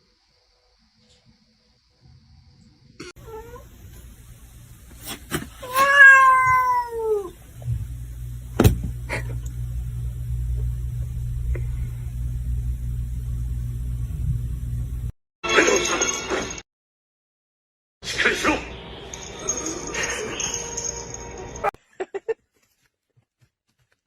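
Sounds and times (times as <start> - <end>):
cat meowing: 3.1 - 3.7, 5.6 - 7.4
steady low rumble: 7.4 - 15.1.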